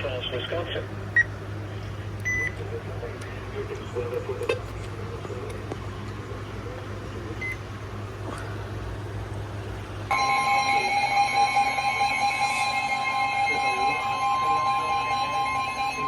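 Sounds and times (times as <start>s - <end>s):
low hum and faint static: 0.0s - 10.4s
two-pitch alert tone: 10.1s - 16.0s.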